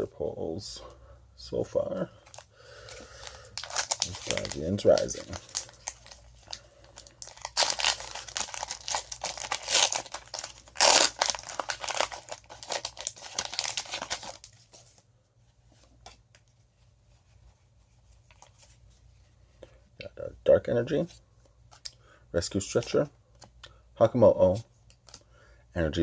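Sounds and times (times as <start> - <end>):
foil wrapper crinkling and tearing: 2.3 - 14.6.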